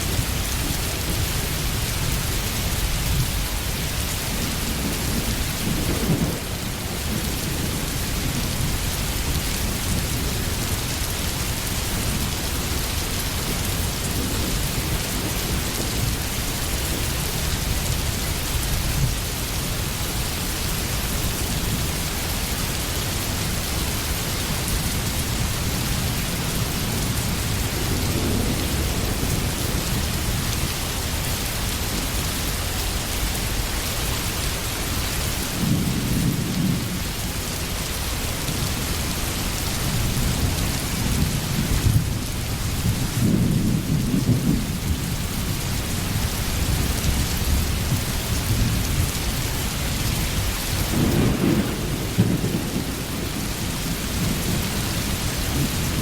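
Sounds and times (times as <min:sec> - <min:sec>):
heavy rain hissing: 0:00.0 - 0:56.0
thunder rolling: 0:50.9 - 0:56.0.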